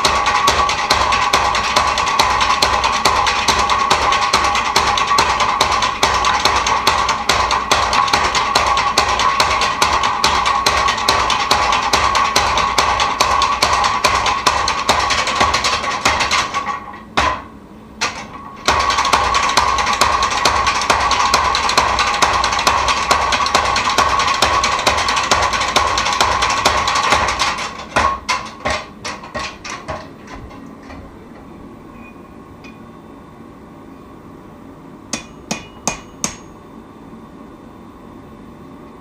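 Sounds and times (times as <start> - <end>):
steady ringing tone: 31.6 - 34.4, 35.0 - 38.8.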